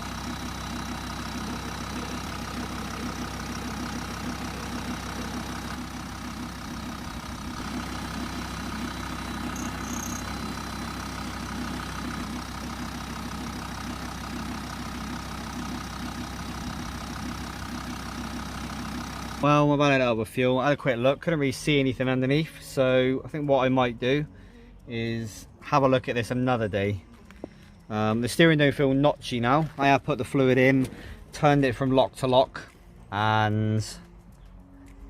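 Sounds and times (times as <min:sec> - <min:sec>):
diesel engine idling: 0:00.0 - 0:35.0.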